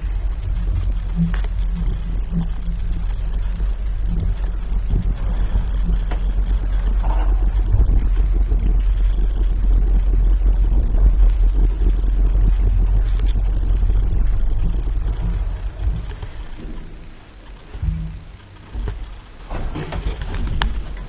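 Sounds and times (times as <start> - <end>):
elevator low rumble: 0.0 - 21.0.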